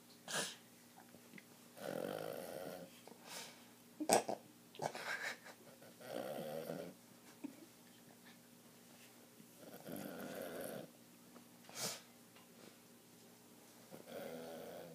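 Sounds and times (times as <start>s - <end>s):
pet snoring: 1.8s - 2.9s, 6.0s - 7.0s, 9.6s - 10.9s, 13.9s - 14.9s.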